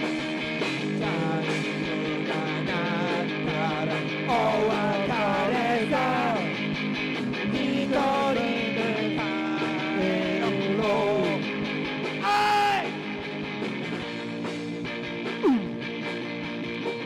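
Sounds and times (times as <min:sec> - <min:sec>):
rock band with electric guitar: 0:00.0 - 0:17.0.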